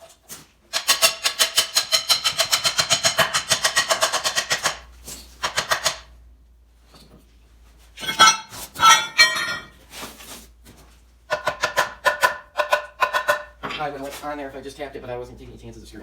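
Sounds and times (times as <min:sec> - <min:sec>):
hammer striking metal ringing: 0:08.0 - 0:09.7.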